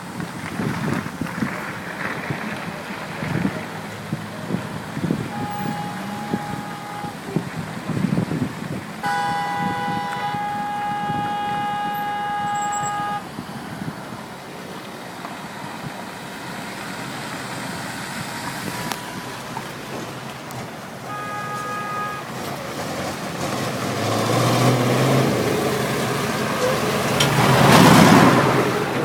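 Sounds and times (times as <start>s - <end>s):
street traffic: 0.0s - 29.0s
vehicle engine approaching: 0.4s - 21.0s
vehicle horns: 4.3s - 8.2s, 9.0s - 14.0s, 17.8s - 19.7s, 21.0s - 22.5s.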